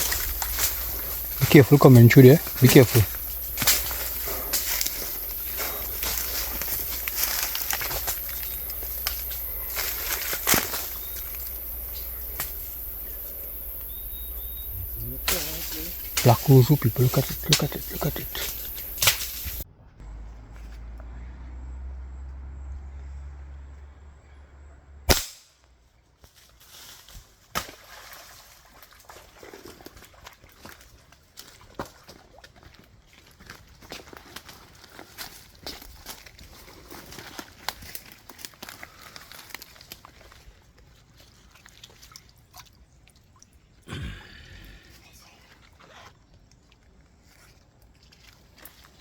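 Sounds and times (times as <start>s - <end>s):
faint rustling: 0.0s - 19.6s
footsteps through undergrowth: 0.0s - 19.6s, 30.5s - 40.6s
sharp cracks: 0.0s - 19.6s, 25.1s - 25.6s
twig snapping: 0.0s - 19.6s, 25.1s - 25.4s.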